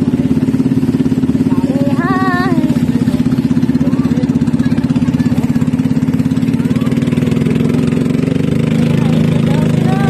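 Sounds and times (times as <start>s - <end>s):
boat engine chugging: 0.0s - 10.0s.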